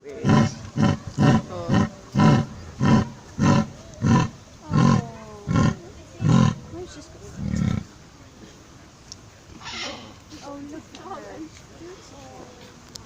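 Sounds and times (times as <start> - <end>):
large animal grunting: 0.1 - 7.9.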